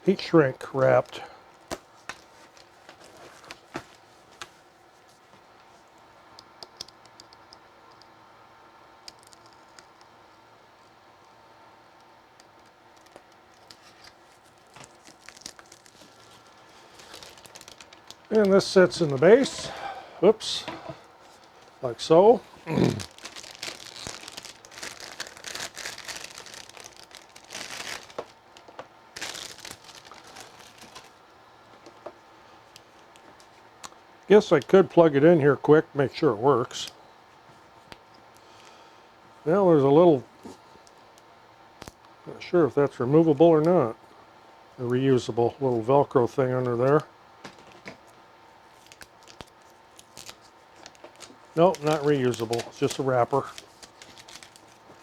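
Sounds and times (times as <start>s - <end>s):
plastic wrap crackling: 13.0s - 32.1s, 46.8s - 55.0s
plastic packaging crinkling: 13.0s - 33.9s, 46.8s - 55.0s.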